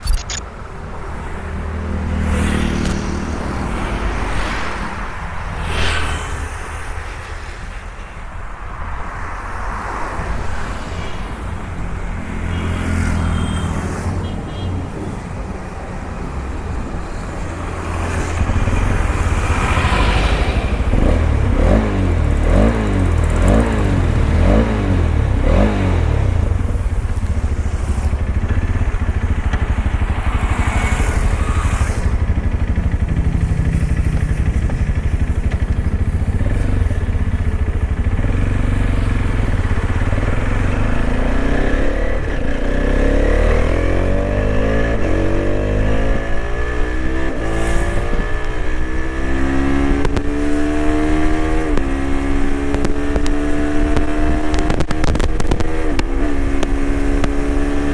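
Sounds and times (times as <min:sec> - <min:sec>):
low wind rush: 0:03.0 - 0:12.2
motorcycle engine accelerating: 0:17.7 - 0:57.9.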